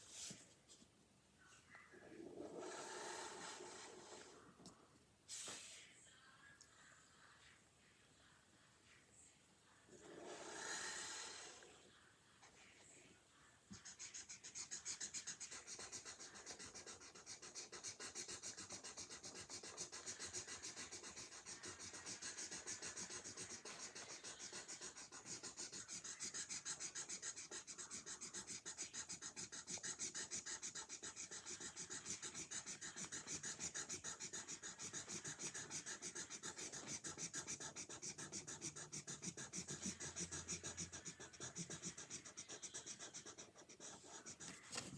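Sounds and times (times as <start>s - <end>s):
marker scratching on paper: 13.7s - 44.9s.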